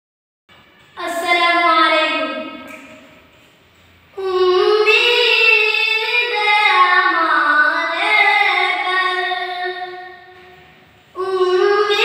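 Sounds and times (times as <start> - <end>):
person singing unaccompanied: 4.2 - 10.1.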